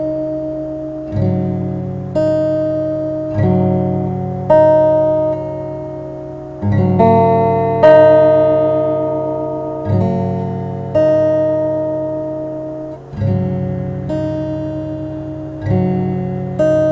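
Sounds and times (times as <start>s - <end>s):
slow acoustic guitar piece: 0.0s - 16.9s.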